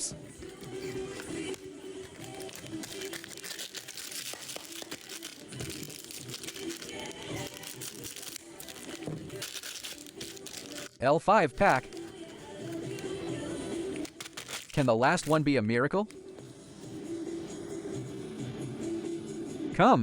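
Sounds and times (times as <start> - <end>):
faint background music: 0.0 - 20.0
foil wrappers crinkling: 0.3 - 11.0, 11.6 - 15.4.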